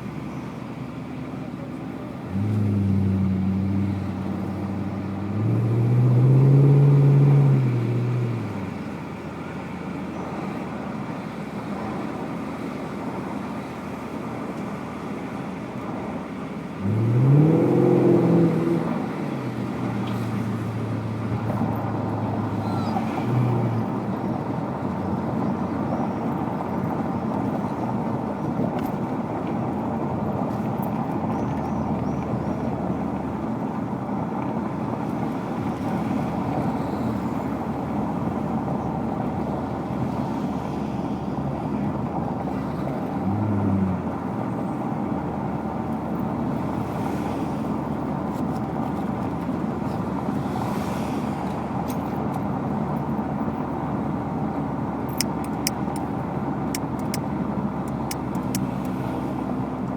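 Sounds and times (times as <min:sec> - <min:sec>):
car engine running: 0:00.0 - 0:12.3, 0:51.6 - 0:59.9.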